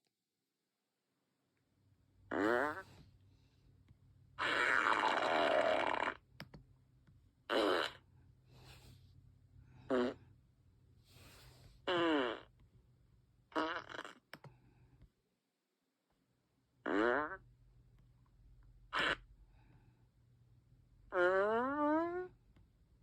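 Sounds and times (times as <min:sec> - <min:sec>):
imitated fart noises: 0:02.3 - 0:03.1, 0:04.4 - 0:06.5, 0:07.5 - 0:08.1, 0:09.8 - 0:10.3, 0:11.8 - 0:12.6, 0:13.5 - 0:14.4, 0:16.8 - 0:17.5, 0:18.9 - 0:19.3, 0:21.1 - 0:22.3.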